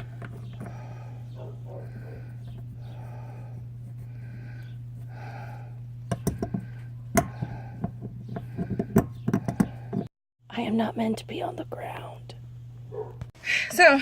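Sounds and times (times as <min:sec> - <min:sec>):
person breathing heavily: 0:00.0 - 0:10.1
steady low hum: 0:00.0 - 0:14.0
socket wrench clicks and knocks: 0:06.1 - 0:10.1.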